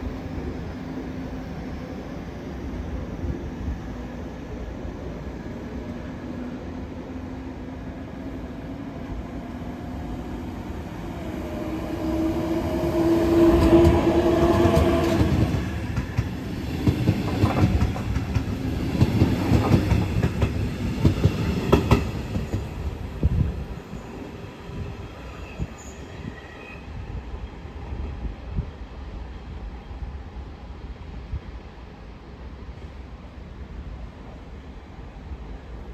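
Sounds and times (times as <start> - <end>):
train rumbling past: 0.0 - 35.9
train wheels clacking over rail joints: 13.5 - 22.7.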